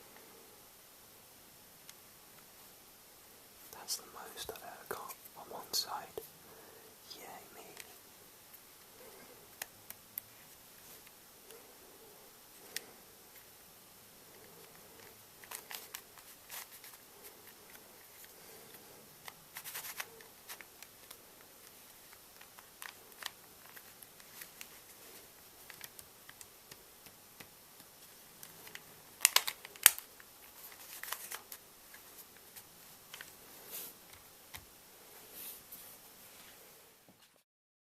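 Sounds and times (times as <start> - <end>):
puzzle cube plastic clicks: 25.6 - 32.1.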